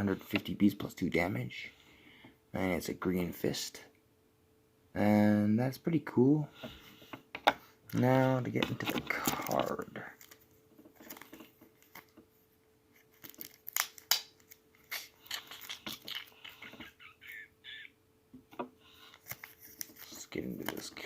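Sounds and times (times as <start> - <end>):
faint steady hum: 0.0 - 21.0
packaging clicks and crinkles: 13.0 - 16.6, 19.1 - 21.0.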